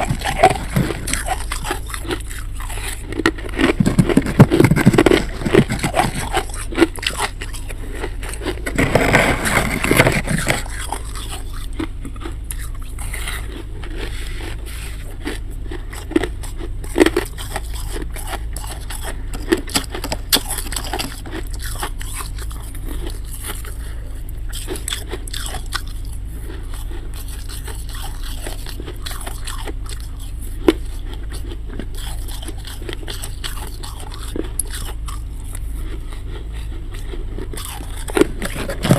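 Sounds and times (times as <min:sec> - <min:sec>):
ice scraping and crunching: 0:00.0 - 0:23.8, 0:37.4 - 0:38.9
steady low hum: 0:00.0 - 0:38.9.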